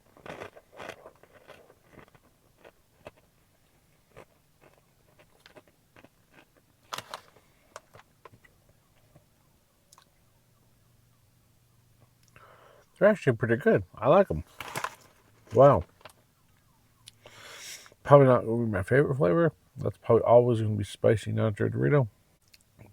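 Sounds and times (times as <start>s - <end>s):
crunching of tortilla chips: 0.0s - 8.6s.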